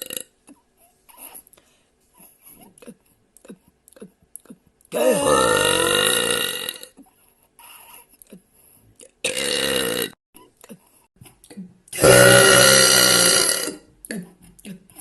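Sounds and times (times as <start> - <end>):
woman burping loudly: 0.0 - 0.3, 4.9 - 7.0, 9.1 - 10.2, 12.0 - 14.2.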